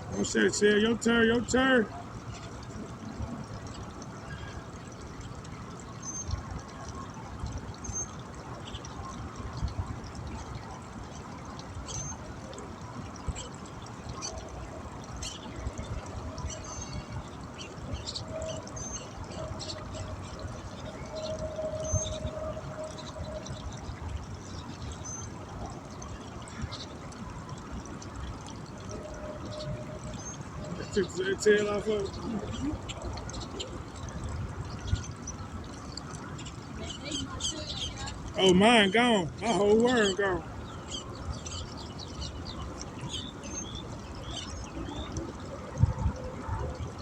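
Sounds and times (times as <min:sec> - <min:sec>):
running water: 0:00.0 - 0:47.0
wind on microphone: 0:14.9 - 0:31.0, 0:40.5 - 0:47.0.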